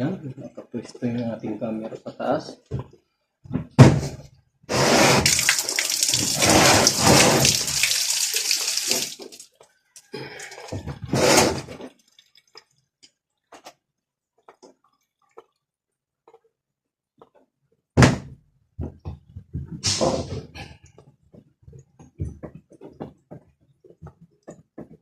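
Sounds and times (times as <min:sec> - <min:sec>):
water running hard: 0:04.7 - 0:09.4
water drips: 0:05.3 - 0:10.8, 0:11.8 - 0:13.2.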